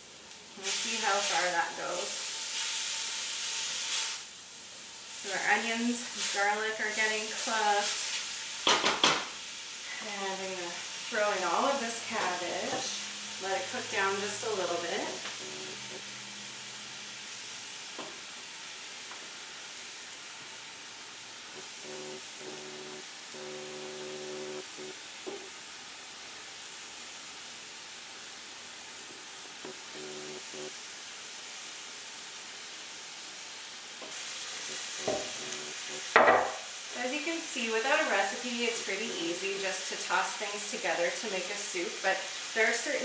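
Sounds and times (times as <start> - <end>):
cabbage sizzling in a pot: 0.0 - 43.0
faint steady tones: 21.6 - 24.9.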